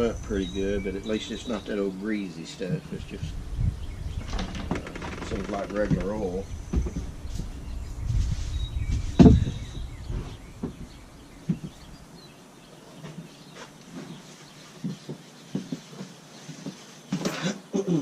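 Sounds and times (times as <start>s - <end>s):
heavy thud: 8.9s - 11.8s.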